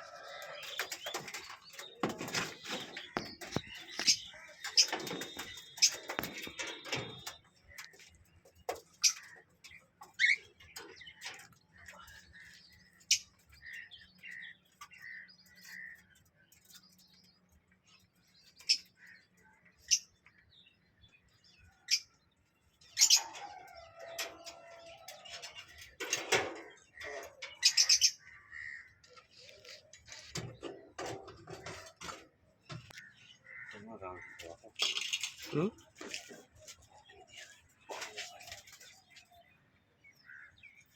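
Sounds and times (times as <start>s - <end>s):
birds chirping: 0.0s - 40.9s.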